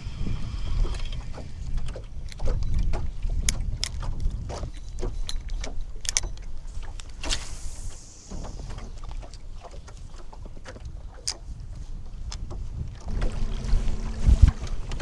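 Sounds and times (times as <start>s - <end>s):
wind rumble on microphone: 0.0s - 15.0s
small water splashes: 0.7s - 15.0s
brief hiss: 7.2s - 8.6s.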